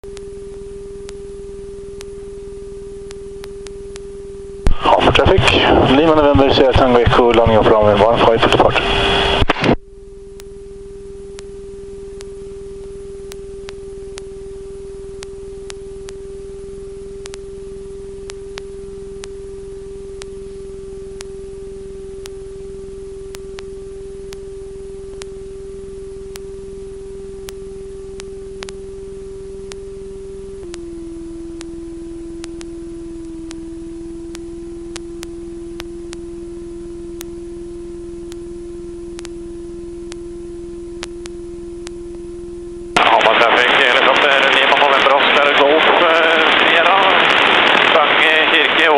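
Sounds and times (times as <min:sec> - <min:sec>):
electrical whine on headset audio: 0:00.0 - 0:48.9
faint clicks: 0:17.2 - 0:17.4, 0:25.1 - 0:25.3, 0:28.2 - 0:28.8, 0:32.4 - 0:33.7, 0:39.1 - 0:39.4.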